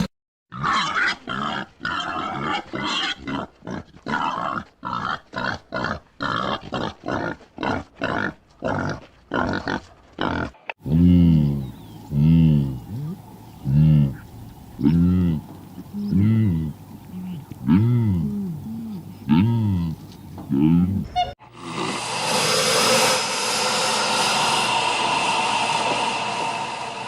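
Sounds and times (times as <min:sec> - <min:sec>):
boar grunting: 0:00.5 - 0:22.0
cow mooing: 0:14.8 - 0:21.3.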